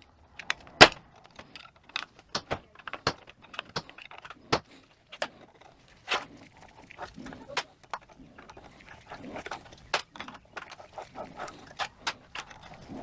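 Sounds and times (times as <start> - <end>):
small metal parts clinking: 0.3 - 6.3.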